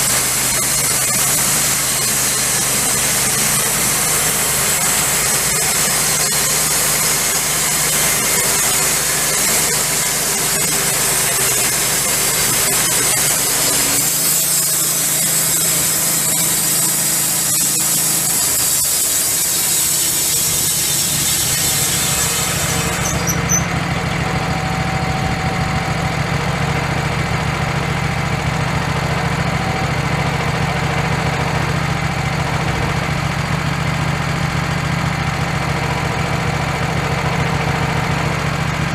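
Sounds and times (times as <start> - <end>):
band saw blade hissing through log: 0.0 - 23.9
engine hum: 19.4 - 38.9.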